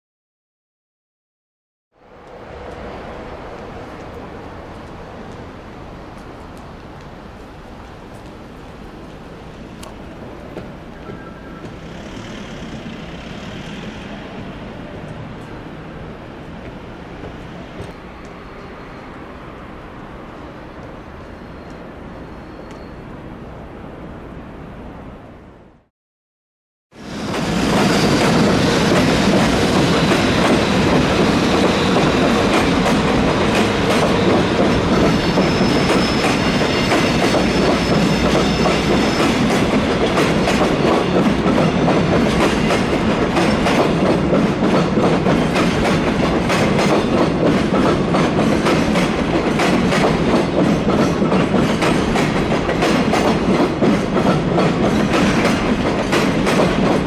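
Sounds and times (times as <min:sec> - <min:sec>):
train wheels clattering over rails: 0:09.9 - 0:14.4, 0:27.0 - 0:57.0
faint high squeal: 0:18.0 - 0:19.4, 0:20.6 - 0:23.1, 0:35.2 - 0:36.5.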